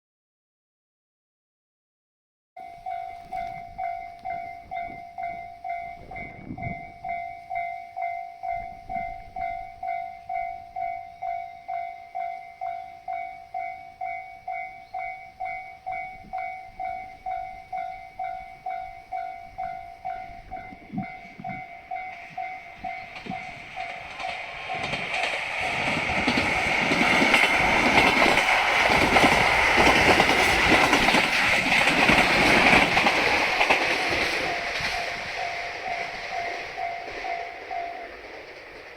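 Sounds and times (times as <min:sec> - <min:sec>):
level crossing bell ringing: 0:02.6 - 0:28.7, 0:33.4 - 0:38.4
train rumble and wheel clatter: 0:02.6 - 0:38.9.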